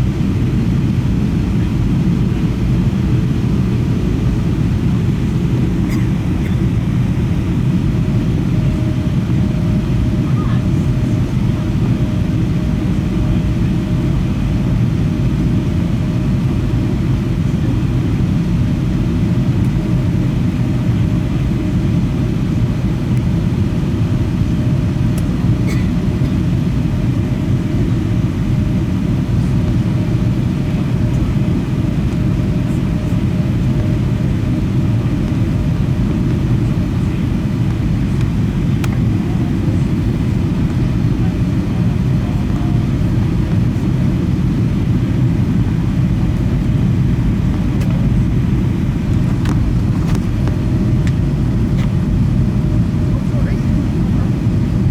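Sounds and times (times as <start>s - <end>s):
aircraft cabin engine rumble: 0.0s - 54.9s.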